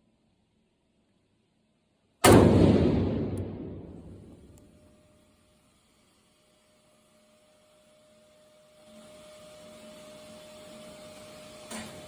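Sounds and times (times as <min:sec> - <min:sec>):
rifle shot echo: 0:02.2 - 0:04.6.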